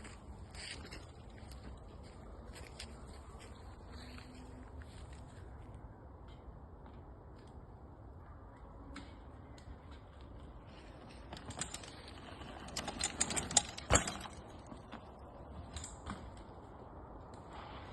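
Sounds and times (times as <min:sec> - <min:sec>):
bike chain rattling and clicking: 0:09.9 - 0:16.5.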